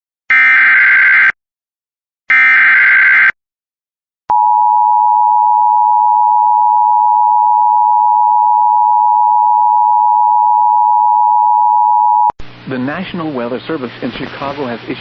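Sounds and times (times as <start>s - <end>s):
steady single-pitch attention tone: 4.3s - 12.3s.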